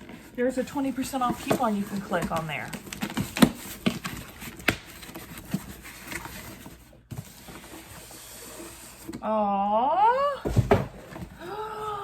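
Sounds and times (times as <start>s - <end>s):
box being unpacked: 0.0s - 9.2s.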